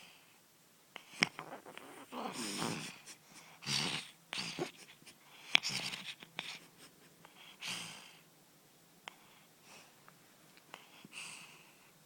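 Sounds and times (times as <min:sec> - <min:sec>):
cat snoring: 0:01.0 - 0:03.0, 0:03.6 - 0:04.7.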